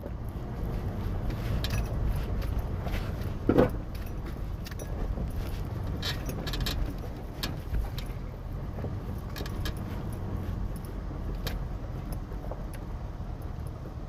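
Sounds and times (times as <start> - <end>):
low engine rumble: 0.0 - 14.0
clicks and rattles: 1.3 - 8.2, 8.8 - 10.0.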